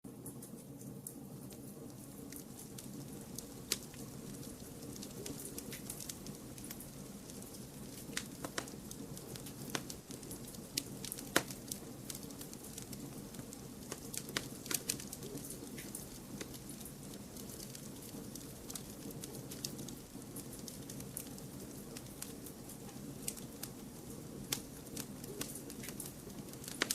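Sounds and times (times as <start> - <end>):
campfire crackling: 0.3 - 26.9.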